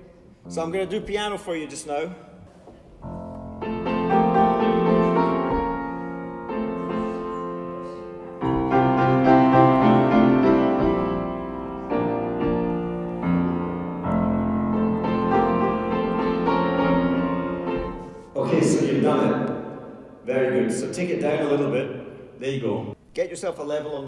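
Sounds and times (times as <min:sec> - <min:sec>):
piano playing slow chords: 0:00.0 - 0:01.7, 0:03.0 - 0:20.3.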